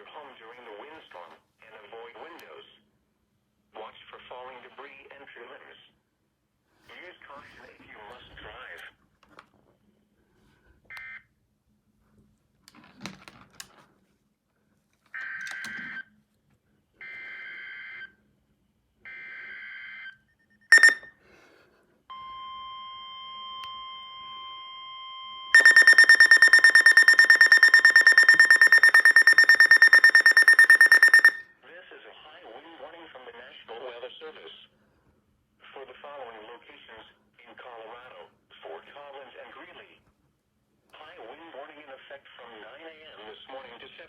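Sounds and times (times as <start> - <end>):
rapidly pulsing electronic alarm: 20.7 - 21.1, 25.6 - 31.4
sharp beep: 20.7 - 21.1, 25.6 - 31.4
steady alert tone: 20.7 - 21.1, 25.6 - 31.4.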